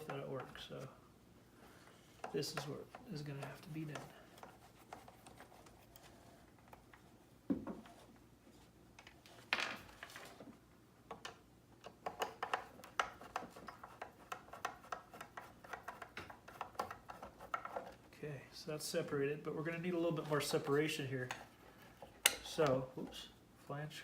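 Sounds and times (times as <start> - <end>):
small scrapes and clicks: 12.0 - 18.1.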